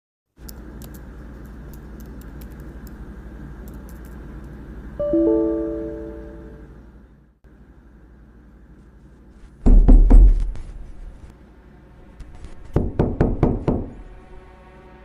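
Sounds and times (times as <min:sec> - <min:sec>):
faint background drone: 0:00.5 - 0:09.5
knocking on a door: 0:09.6 - 0:10.5, 0:12.7 - 0:14.0.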